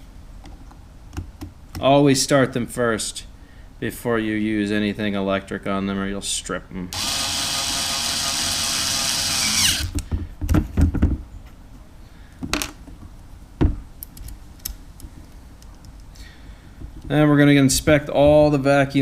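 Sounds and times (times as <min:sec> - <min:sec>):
electric drill whining: 0:07.0 - 0:10.0.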